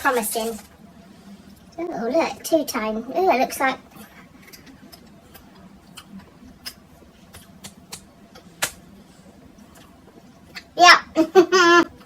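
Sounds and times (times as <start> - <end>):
mouth chewing clicks and smacks: 4.0 - 8.8.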